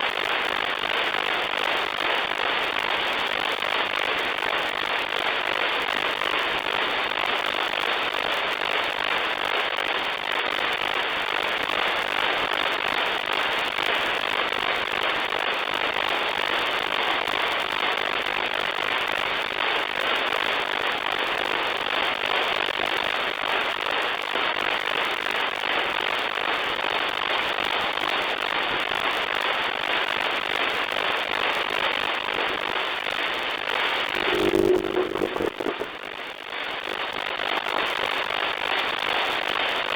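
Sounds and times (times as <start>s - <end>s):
radio static hiss: 34.1s - 36.2s.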